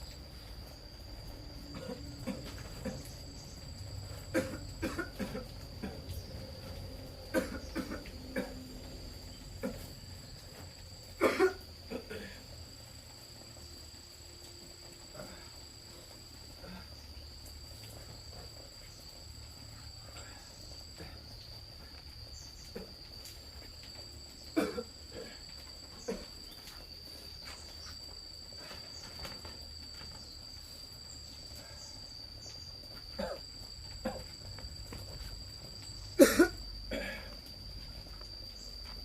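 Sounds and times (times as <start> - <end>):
higher insect trill: 0.0 - 39.0
insects trilling: 0.0 - 39.0.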